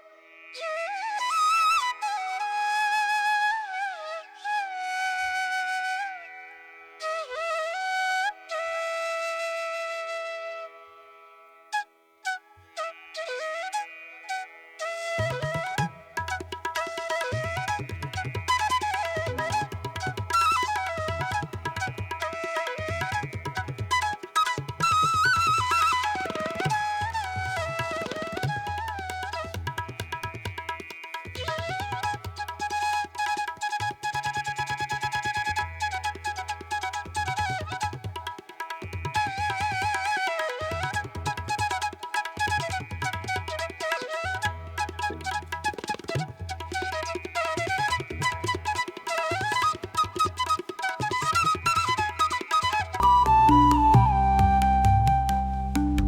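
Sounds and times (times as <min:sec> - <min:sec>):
flute playing held notes: 0:12.3 - 0:30.8, 0:31.4 - 0:56.0
instrumental music with busy percussion: 0:15.3 - 0:53.1.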